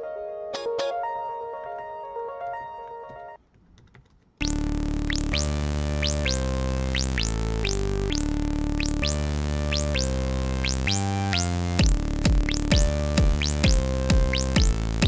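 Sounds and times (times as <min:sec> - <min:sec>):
electronic synthesizer track: 0:04.4 - 0:15.0.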